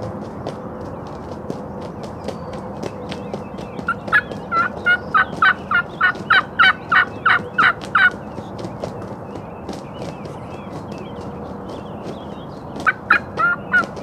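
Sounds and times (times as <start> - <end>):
turkey yelps: 3.9 - 8.2, 12.8 - 14.0.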